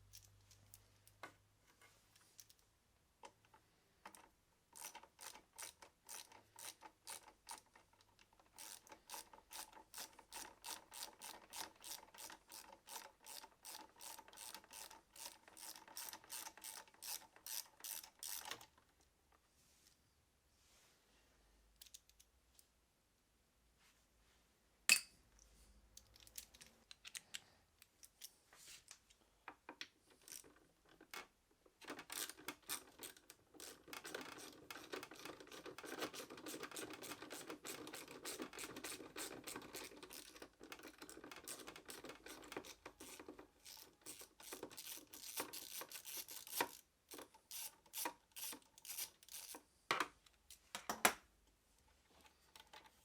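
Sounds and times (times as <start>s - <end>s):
ratchet wrench clicking: 43.7s - 46.8s.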